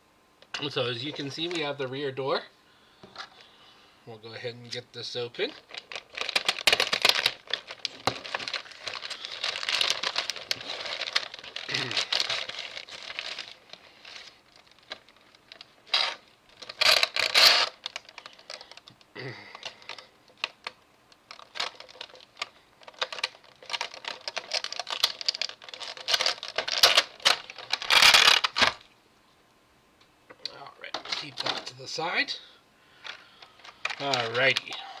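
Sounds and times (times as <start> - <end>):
packaging rustling: 5.2 - 28.8, 32.9 - 35.0.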